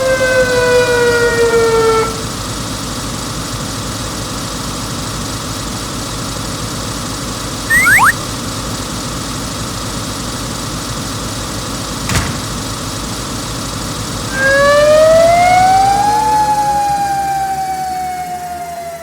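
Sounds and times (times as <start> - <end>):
siren rising and falling: 7.7 - 8.2
sharp knock: 12.1 - 12.7.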